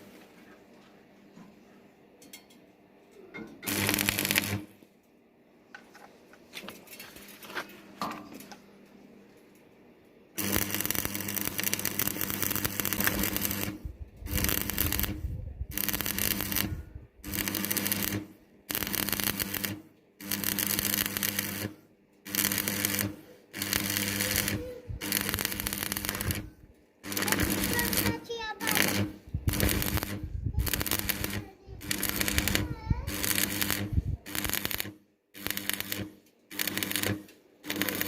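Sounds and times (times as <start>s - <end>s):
arc welding crackling: 3.6s - 4.8s, 10.4s - 38.0s.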